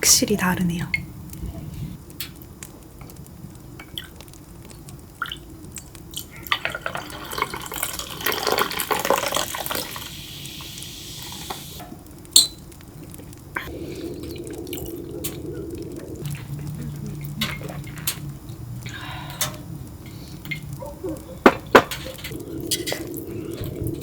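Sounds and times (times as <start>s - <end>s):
liquid poured into a glass: 6.2s - 11.5s.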